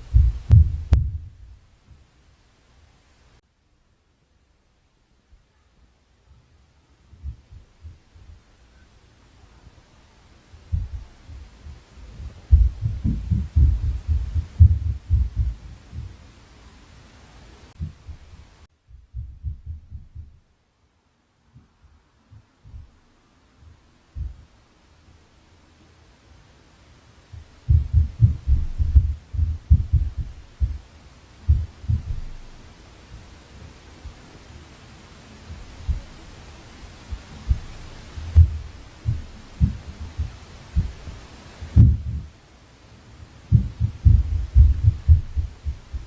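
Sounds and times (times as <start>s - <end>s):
footsteps thudding through ceiling: 0.0s - 2.0s, 10.5s - 16.2s, 17.7s - 20.5s, 23.6s - 24.5s, 27.3s - 33.3s, 35.5s - 42.4s, 43.5s - 46.0s.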